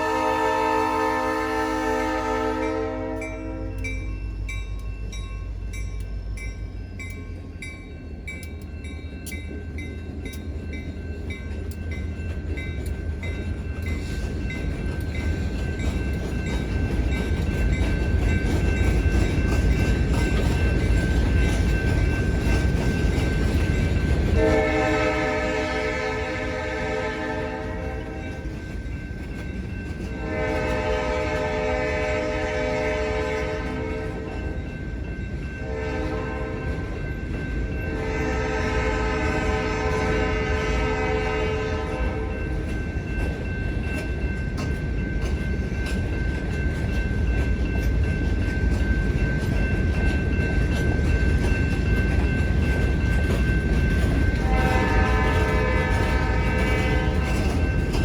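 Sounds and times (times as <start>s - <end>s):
train air horn blasts: 0.0s - 4.1s, 24.4s - 28.4s, 30.1s - 34.5s, 35.6s - 36.9s, 37.8s - 42.4s, 54.4s - 57.5s
diesel locomotives rumbling: 0.0s - 58.0s.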